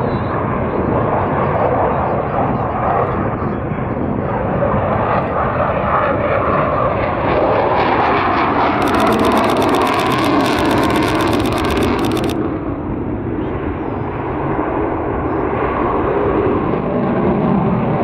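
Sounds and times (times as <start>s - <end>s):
aircraft engine: 0.0s - 18.0s
engine crackle: 8.8s - 12.4s.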